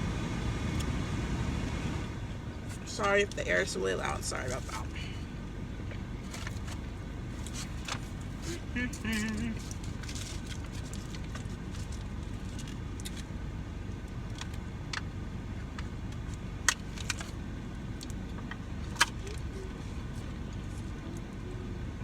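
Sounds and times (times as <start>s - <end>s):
loud low air rush: 0.0s - 3.0s.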